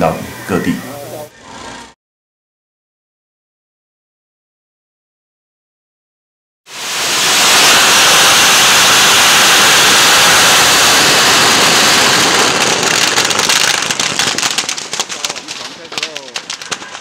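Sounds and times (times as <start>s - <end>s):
firecrackers going off: 6.7s - 17.0s.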